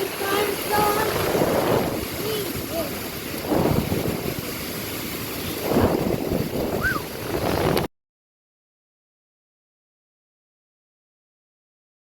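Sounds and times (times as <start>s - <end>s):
wind buffeting microphone: 0.0s - 7.9s.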